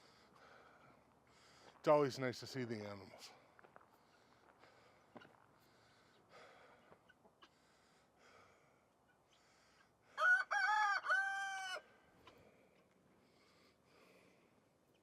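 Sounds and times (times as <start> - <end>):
rooster crowing: 10.2 - 12.0.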